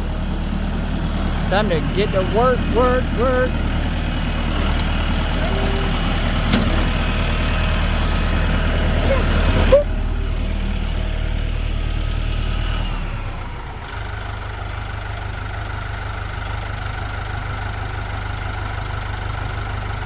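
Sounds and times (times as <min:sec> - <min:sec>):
vehicle engine running: 0:00.0 - 0:20.0.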